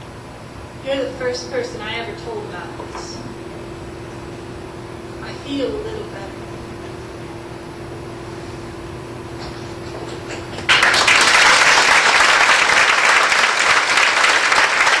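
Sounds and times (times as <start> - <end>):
steady hum: 0.0 - 15.0
scattered claps: 10.5 - 15.0
audience applause: 10.7 - 15.0.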